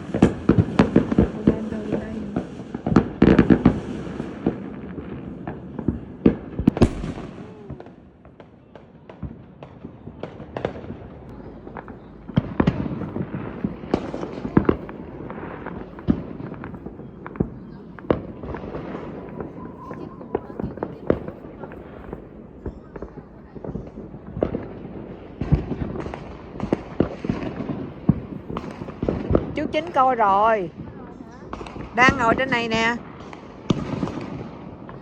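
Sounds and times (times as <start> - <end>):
fireworks bangs and pops: 0.0 - 35.0.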